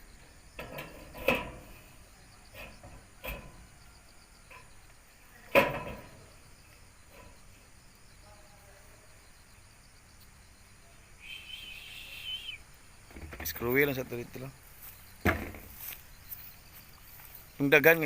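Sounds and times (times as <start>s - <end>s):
metallic clanks and knocks: 0.6s - 1.9s, 2.5s - 3.9s, 5.5s - 6.4s.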